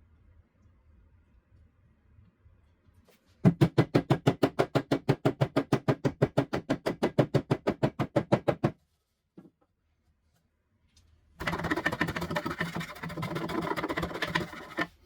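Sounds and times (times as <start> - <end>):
rapid sharp knocks: 3.4 - 8.8.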